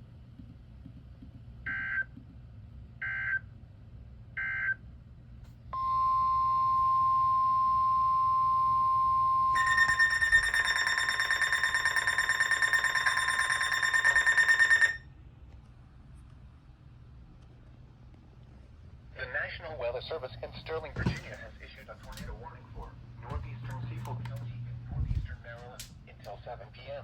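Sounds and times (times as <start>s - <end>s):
rapidly pulsing electronic alarm: 5.8s - 15.0s
steady warning tone: 5.8s - 15.1s.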